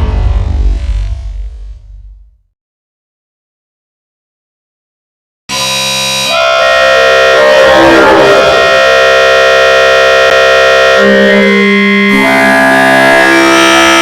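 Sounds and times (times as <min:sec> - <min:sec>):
dense electronic music: 0:06.4 - 0:14.0.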